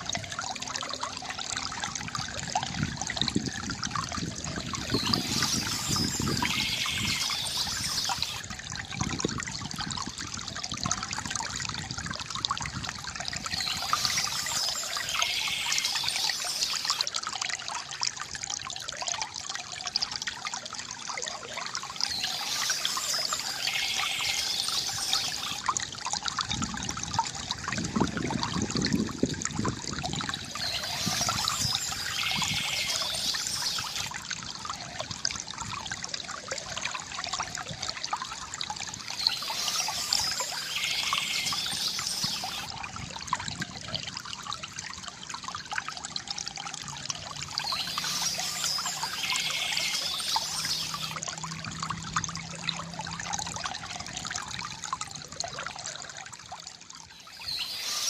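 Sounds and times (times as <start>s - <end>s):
stream trickling and splashing: 0.0s - 58.0s
high bird song: 4.8s - 8.4s, 13.4s - 17.0s, 21.8s - 25.6s, 30.3s - 34.1s, 39.0s - 42.7s, 47.5s - 51.2s, 57.2s - 58.0s.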